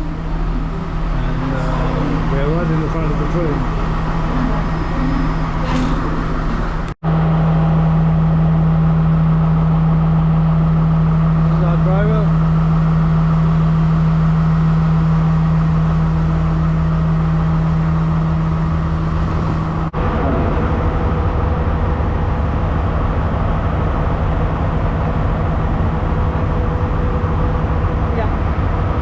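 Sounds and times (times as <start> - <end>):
diesel train engine idling: 0.0 - 29.0.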